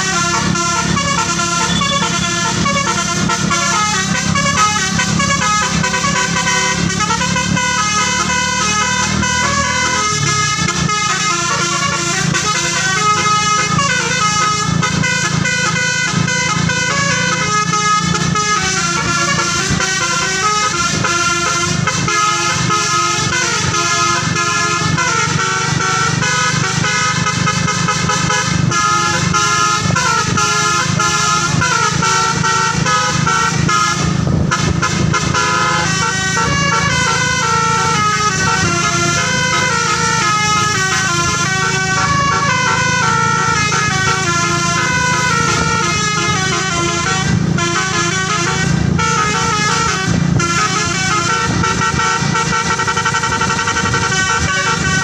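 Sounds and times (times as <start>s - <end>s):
bus engine humming: 0.0s - 55.0s
multi-tone air horn melody: 0.0s - 55.0s.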